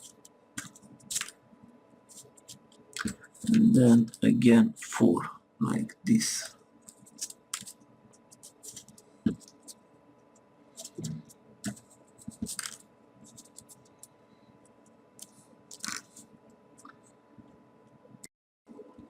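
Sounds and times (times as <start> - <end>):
paper clicks and rustles: 0.0 - 1.4, 6.4 - 9.8, 10.8 - 14.1, 15.2 - 17.0.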